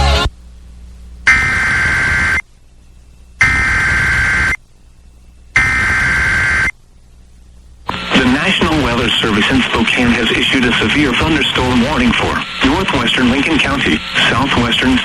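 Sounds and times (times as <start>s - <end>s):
buzzing digital data tones: 1.3s - 2.4s, 3.4s - 4.6s, 5.5s - 6.8s.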